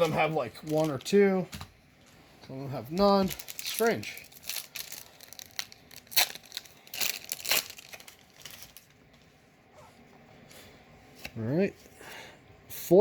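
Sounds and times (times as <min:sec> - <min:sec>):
foil wrapper crinkling and tearing: 0:00.5 - 0:01.3, 0:02.8 - 0:09.0.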